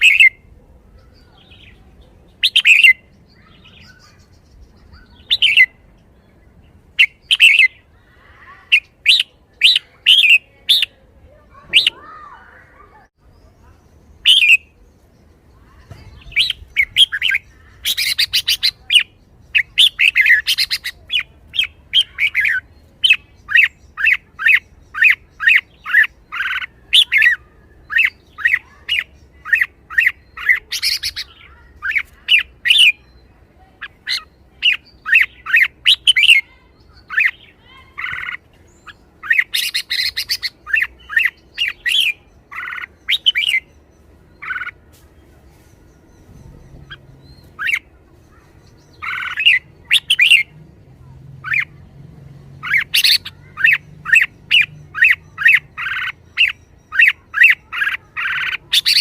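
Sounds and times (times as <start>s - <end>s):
bulbul chirping and whistling: 34.2s - 36.5s, 48.7s - 50.5s.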